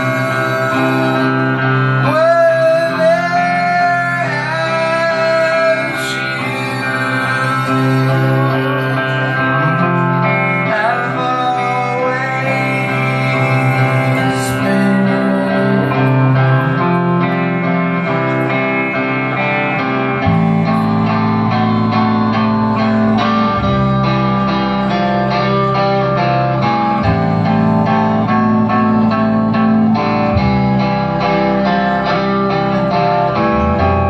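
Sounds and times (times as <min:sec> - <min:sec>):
electric guitars ringing: 0:00.0 - 0:34.0
live rock band playing: 0:00.0 - 0:34.0
deep bass part: 0:12.6 - 0:34.0.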